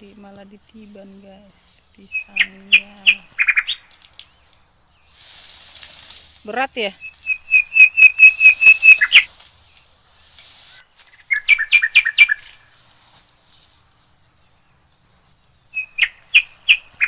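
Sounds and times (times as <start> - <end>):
bird whistling repeated notes: 7.0 - 9.3, 10.7 - 12.6, 15.8 - 17.0.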